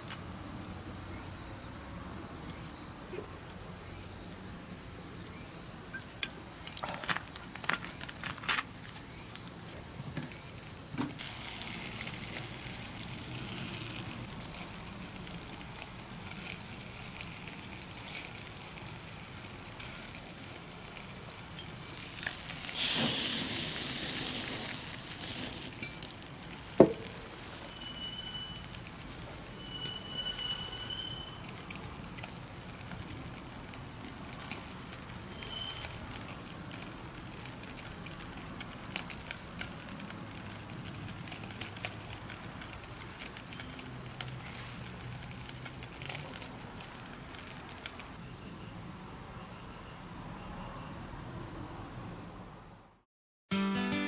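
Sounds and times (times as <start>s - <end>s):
insects chirring: 0.0s - 52.8s
hissing rush: 11.2s - 27.9s.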